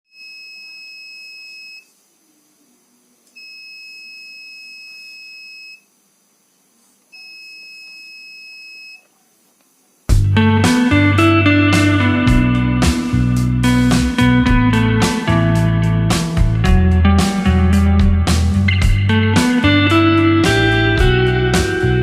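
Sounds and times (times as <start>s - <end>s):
buzzer high tone: 3.4s - 5.9s, 7.2s - 9.0s
loud guitar music: 10.1s - 22.0s.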